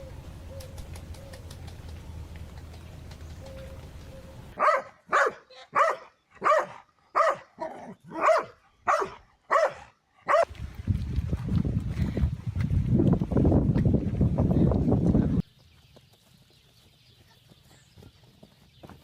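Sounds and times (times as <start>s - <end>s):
dog barking: 4.6s - 10.5s.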